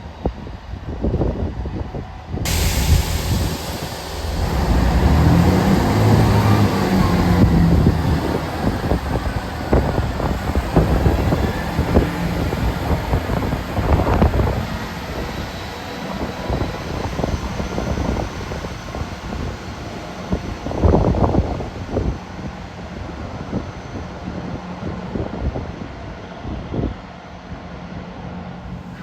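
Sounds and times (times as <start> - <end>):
train rumbling on tracks: 0.0 - 29.0
wind buffeting microphone: 0.9 - 22.2.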